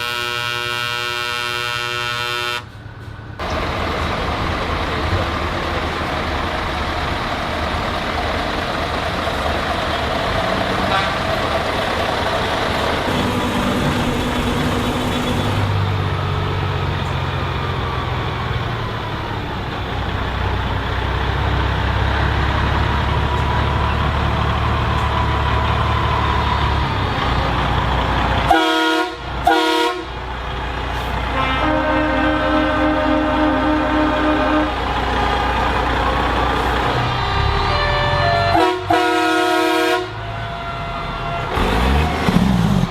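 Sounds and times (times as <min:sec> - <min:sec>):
truck horn blasts: 0:00.0 - 0:02.7, 0:10.8 - 0:11.3, 0:28.5 - 0:30.2, 0:31.2 - 0:34.9, 0:37.2 - 0:42.2
truck diesel engines passing: 0:00.0 - 0:42.9.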